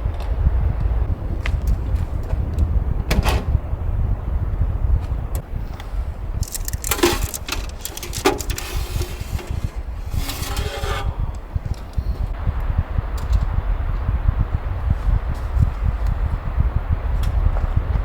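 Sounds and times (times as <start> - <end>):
wind buffeting microphone: 0.0 - 18.0
brief rustling: 6.4 - 12.0
knocks and clicks: 6.4 - 12.4.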